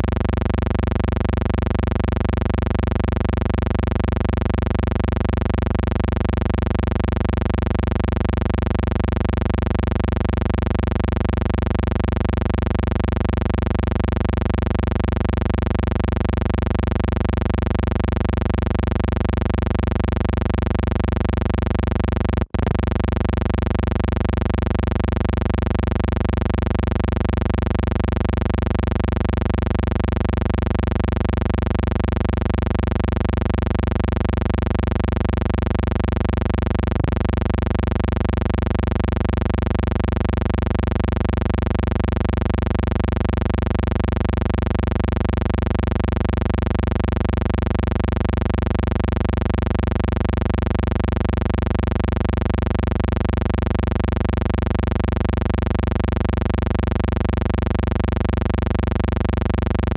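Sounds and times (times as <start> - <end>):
electrical hum: 0.0 - 38.7.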